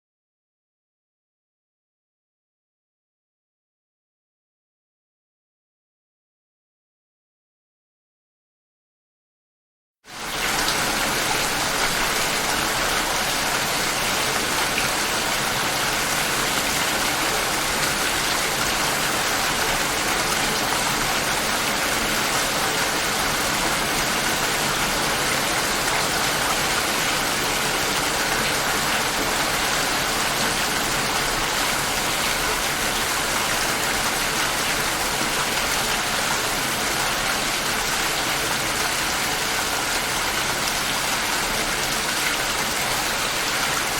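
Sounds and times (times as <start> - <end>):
steady rain hiss: 10.1 - 36.4.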